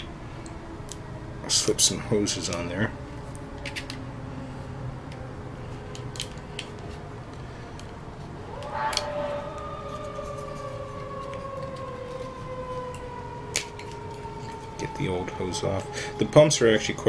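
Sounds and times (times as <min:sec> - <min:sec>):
clicks of parts handled: 0:03.3 - 0:04.0, 0:05.8 - 0:08.0, 0:12.8 - 0:14.8
siren rising and falling: 0:08.3 - 0:17.0.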